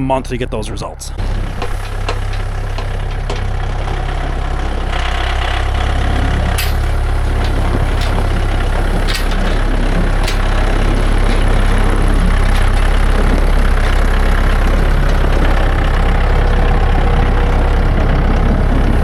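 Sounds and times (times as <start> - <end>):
tractor engine running: 0.0 - 19.0.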